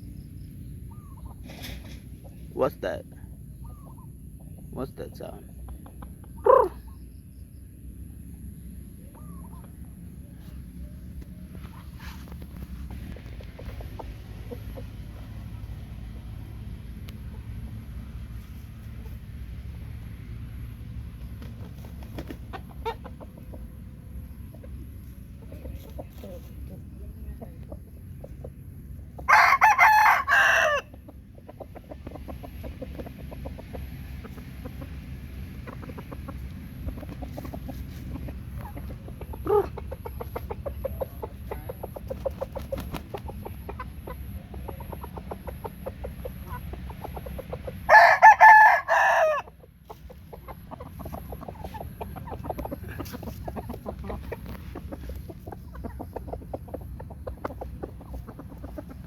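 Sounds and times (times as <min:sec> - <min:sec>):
chickens clucking: 0:00.0 - 0:59.0
rooster crowing: 0:29.2 - 0:31.0, 0:47.8 - 0:49.6.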